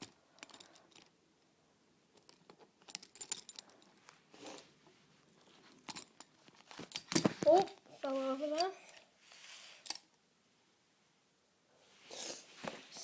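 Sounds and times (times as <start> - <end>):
soft rustle: 3.4 - 10.0, 11.8 - 13.0.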